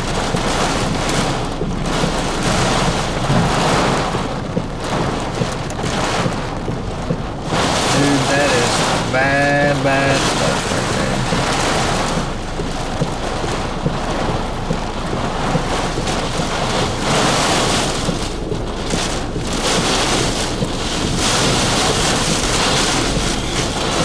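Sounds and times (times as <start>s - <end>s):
rain against a vehicle: 0.0s - 24.0s.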